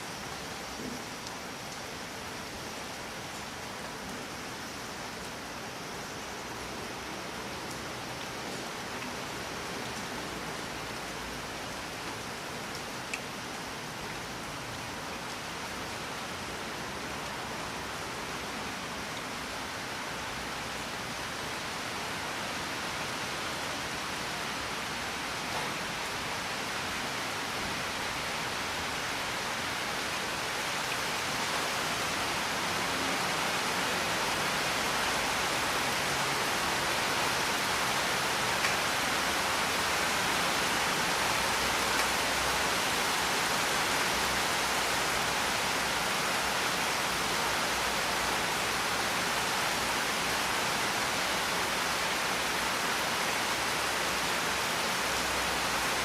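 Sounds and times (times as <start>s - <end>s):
steady rain hiss: 0.0s - 56.0s
faint raindrop ticks: 0.8s - 2.5s, 7.6s - 16.3s, 38.5s - 38.9s, 41.6s - 42.2s.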